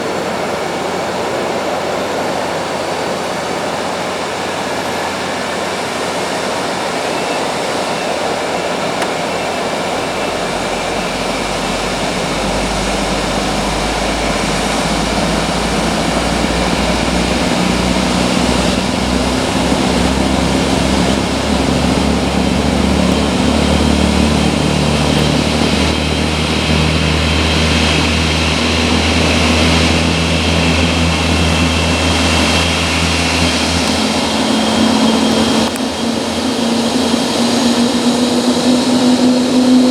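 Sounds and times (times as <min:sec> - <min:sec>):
jet engines whining: 0:00.0 - 0:39.9
deep rumble: 0:08.4 - 0:39.9.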